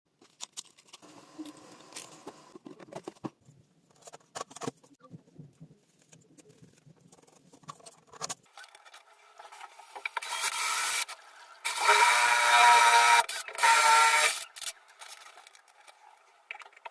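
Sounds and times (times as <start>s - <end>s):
objects being handled: 0.1s - 10.4s, 14.4s - 16.9s.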